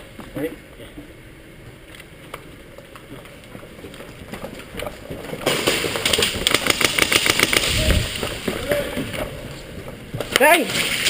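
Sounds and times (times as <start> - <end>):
airsoft rifle firing full auto: 5.5 - 7.9.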